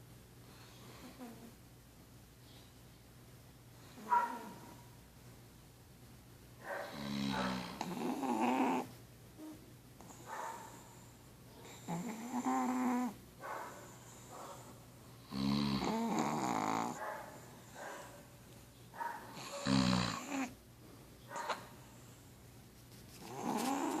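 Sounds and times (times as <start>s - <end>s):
dog snoring: 6.8s - 10.2s, 11.6s - 13.2s, 15.2s - 17.0s, 19.4s - 20.6s, 23.2s - 24.0s.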